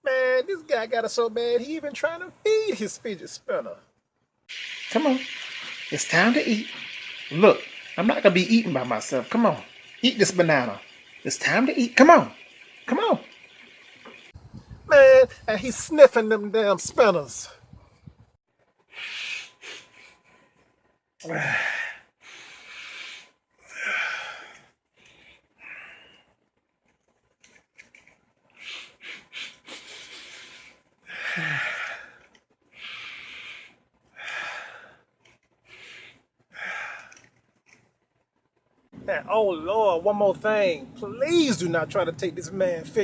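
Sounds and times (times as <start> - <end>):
man sniffing through nose: 18.9 - 20.2, 28.6 - 30.8
man moaning: 21.2 - 21.7.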